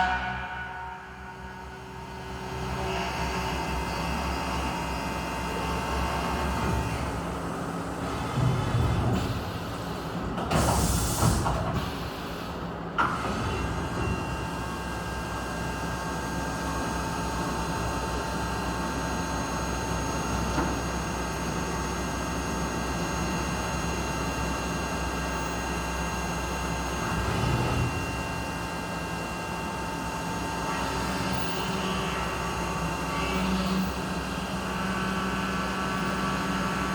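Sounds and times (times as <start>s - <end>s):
high whining tones: 0.0s - 2.8s
machining center running: 0.0s - 8.5s.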